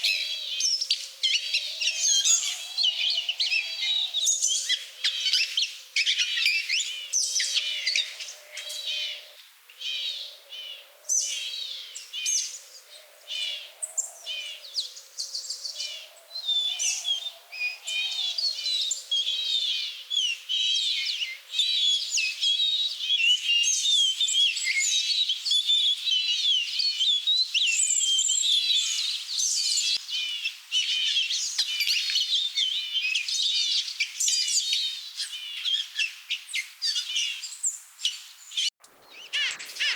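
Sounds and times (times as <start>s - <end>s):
songbirds chirping and singing: 0.0s - 39.9s.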